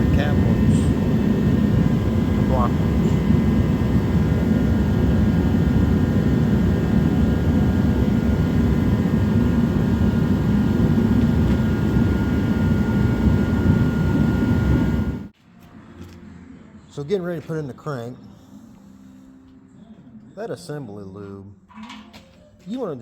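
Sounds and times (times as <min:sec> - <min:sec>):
jet heater rushing: 0:00.0 - 0:15.3.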